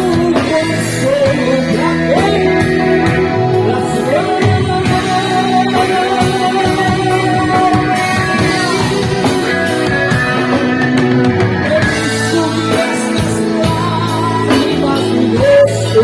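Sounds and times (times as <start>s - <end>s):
bass guitar: 0.0s - 16.0s
drum kit: 0.0s - 16.0s
electric guitars: 0.0s - 16.0s
keyboard chords: 0.0s - 16.0s.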